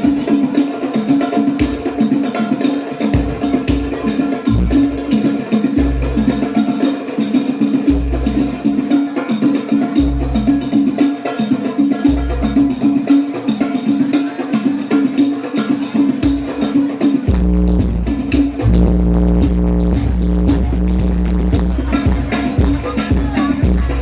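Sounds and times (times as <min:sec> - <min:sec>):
frame drum and jingle percussion: 0:00.0 - 0:24.0
deep bass note: 0:04.5 - 0:05.0, 0:17.3 - 0:21.8.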